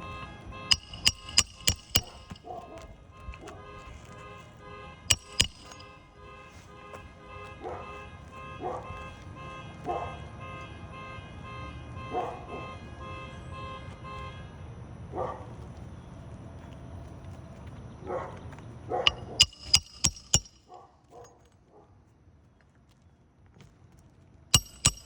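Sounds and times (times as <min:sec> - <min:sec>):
sharp knocks: 0:00.7 - 0:02.4, 0:05.1 - 0:05.9, 0:19.1 - 0:20.6
dog barking: 0:07.6 - 0:08.0, 0:08.6 - 0:09.0, 0:09.9 - 0:10.1, 0:12.1 - 0:12.6, 0:15.1 - 0:15.5, 0:18.0 - 0:19.2, 0:20.7 - 0:22.0.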